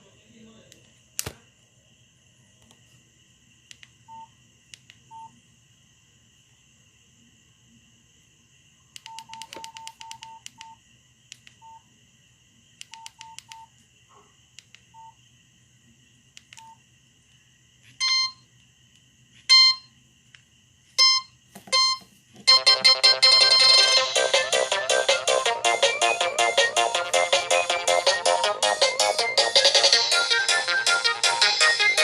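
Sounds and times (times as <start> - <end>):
keypad button clicks: 9.0 - 11.6, 12.8 - 13.7
short beep key tones: 21.0 - 23.6
louder phone tones: 21.0 - 24.0
polyphonic ringtone: 21.0 - 31.8.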